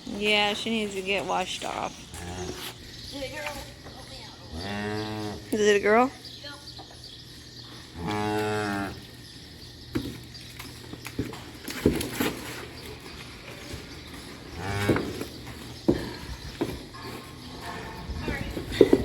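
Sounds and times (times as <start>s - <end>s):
cow mooing: 2.1s - 2.7s, 4.4s - 5.6s, 8.0s - 9.1s, 14.5s - 15.2s.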